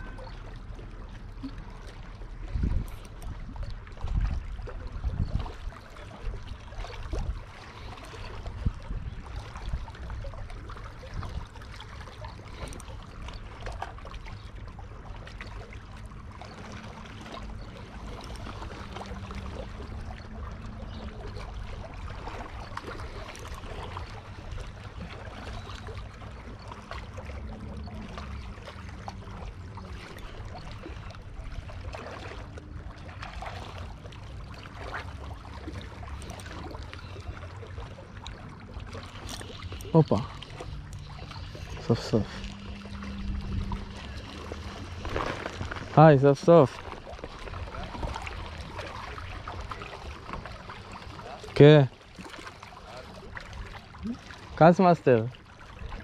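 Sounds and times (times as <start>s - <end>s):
small waves lapping and splashing: 0.0s - 56.0s
wind buffeting microphone: 2.4s - 11.6s, 40.8s - 46.0s.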